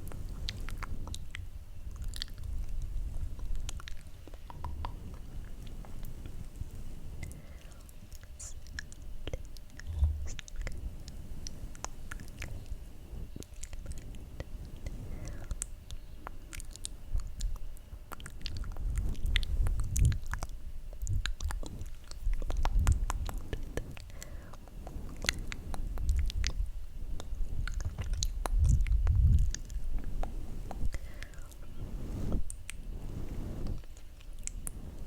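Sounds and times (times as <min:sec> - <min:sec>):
low muffled rumbles: 0:00.0 - 0:15.6, 0:16.9 - 0:33.9
wet mouth clicks and smacks: 0:03.4 - 0:06.1, 0:15.4 - 0:26.6, 0:27.2 - 0:31.6.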